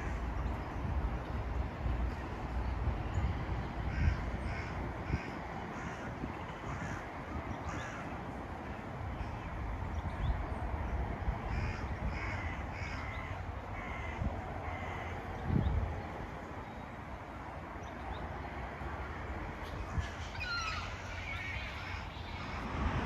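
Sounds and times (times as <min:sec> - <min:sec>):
birds calling: 0:03.0 - 0:10.7, 0:11.4 - 0:18.3, 0:19.6 - 0:23.0.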